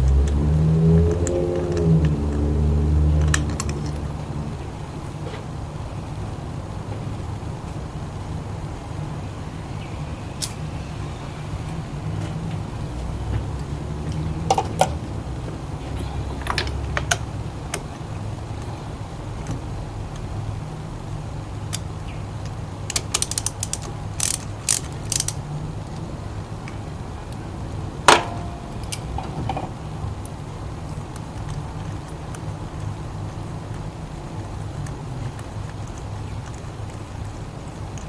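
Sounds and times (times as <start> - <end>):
steady low hum: 1.0 - 21.6, 26.9 - 31.2
metallic ratchet clicks: 22.9 - 25.4.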